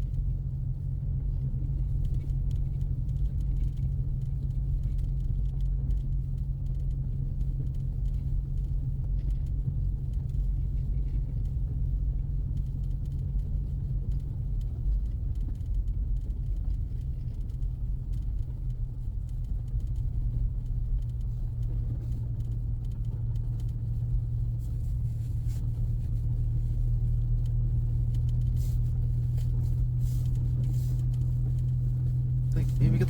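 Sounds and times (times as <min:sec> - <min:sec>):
tyres rumbling on snowy road: 0:00.0 - 0:33.0
car engine drone: 0:13.6 - 0:33.0.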